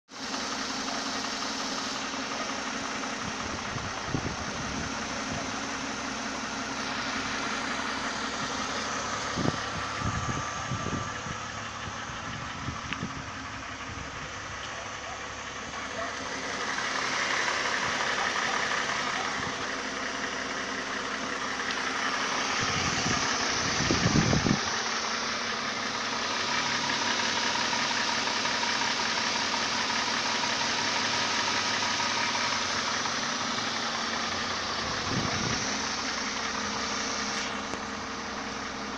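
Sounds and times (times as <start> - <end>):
car engine idling with knock: 0.1 - 38.9.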